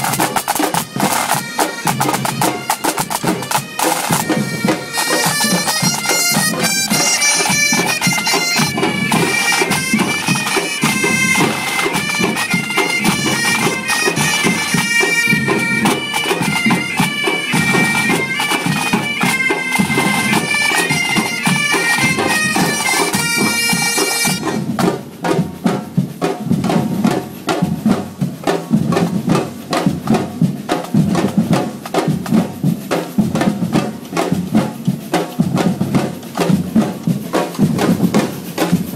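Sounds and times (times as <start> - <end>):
bagpipes playing melody: 0.4 - 24.7.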